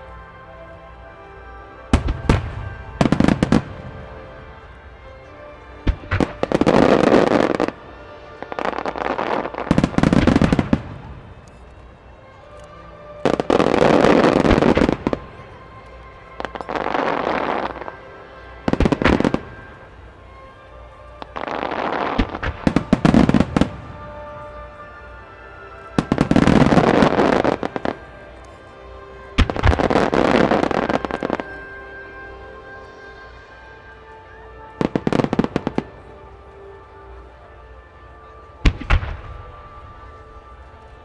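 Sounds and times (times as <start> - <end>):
fireworks bursting and crackling: 1.9 - 33.9.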